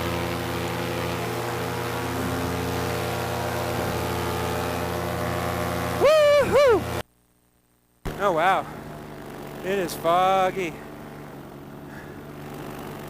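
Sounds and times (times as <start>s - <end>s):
paramotor engine drone: 0.0s - 7.0s, 8.1s - 13.0s
person calling out: 6.0s - 6.9s.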